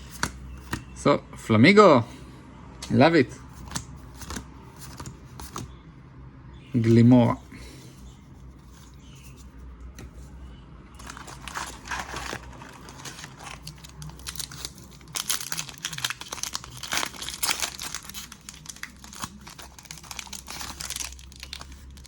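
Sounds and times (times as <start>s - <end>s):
foil wrapper crinkling: 11.0s - 22.0s.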